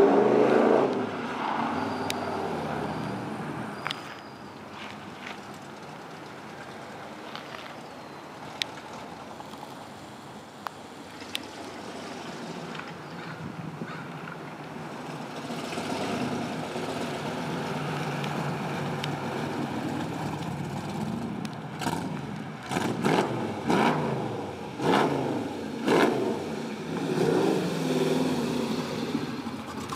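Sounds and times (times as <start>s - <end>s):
car engine revving: 20.7s - 29.9s.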